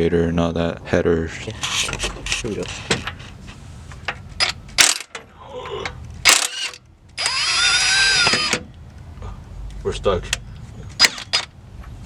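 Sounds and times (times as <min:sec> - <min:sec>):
power tool motor whirring: 0:06.3 - 0:08.6.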